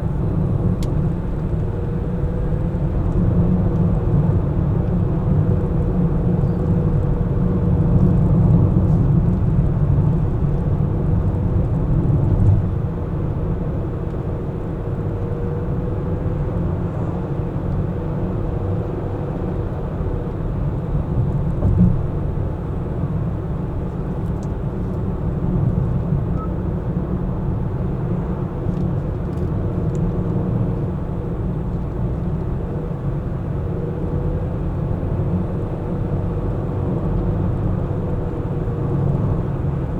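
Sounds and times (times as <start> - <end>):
car engine and tyre noise: 0.0 - 39.9.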